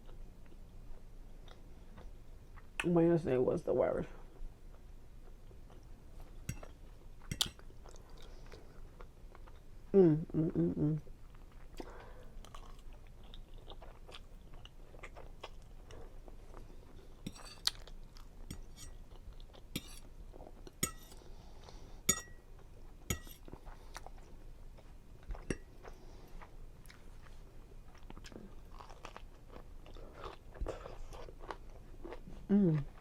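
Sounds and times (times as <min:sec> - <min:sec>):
chewing and wet mouth sounds: 0:04.3 - 0:09.7, 0:11.3 - 0:20.8, 0:23.4 - 0:33.0.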